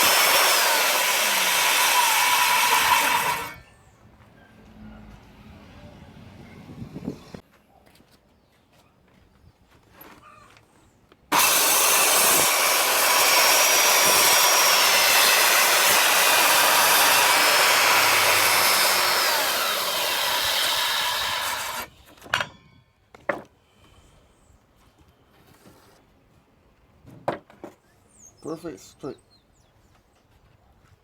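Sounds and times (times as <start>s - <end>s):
circular saw cutting board: 0.0s - 3.6s, 11.3s - 21.9s.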